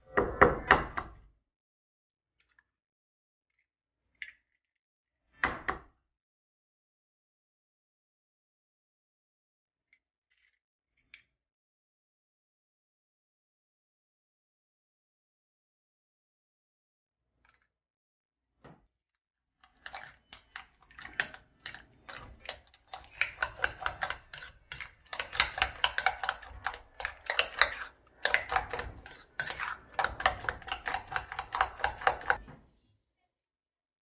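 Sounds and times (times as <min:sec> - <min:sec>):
kitchen utensil tapping: 0:19.8 - 0:32.5.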